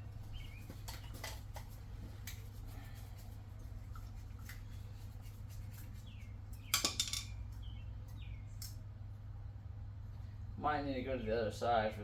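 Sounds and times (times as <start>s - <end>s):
steady low hum: 0.0s - 12.0s.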